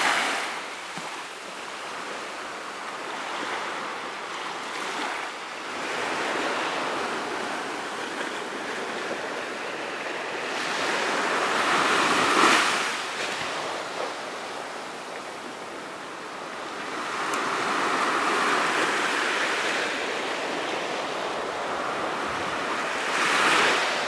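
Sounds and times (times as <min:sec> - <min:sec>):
ocean waves washing onto beach: 0:00.0 - 0:24.0.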